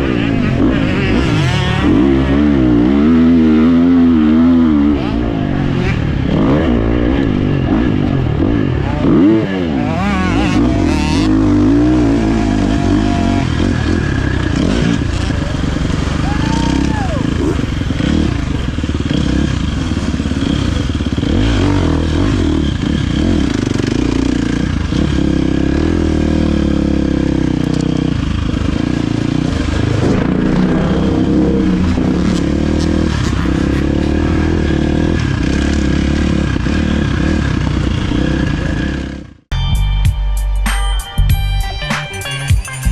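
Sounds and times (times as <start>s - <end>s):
dirt bike engine revving: 0.0s - 39.5s
music: 39.5s - 42.9s.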